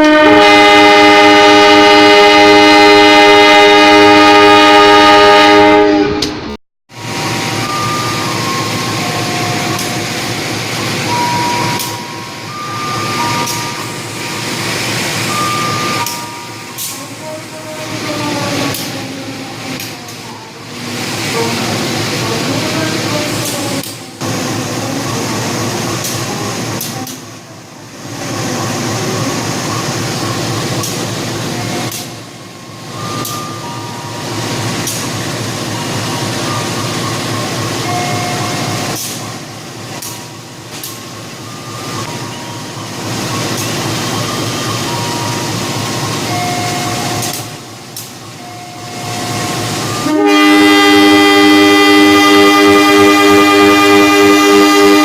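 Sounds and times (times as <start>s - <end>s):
locomotive horn blast: 0.0s - 6.5s, 49.9s - 55.0s
train rumbling on rails: 0.0s - 55.0s.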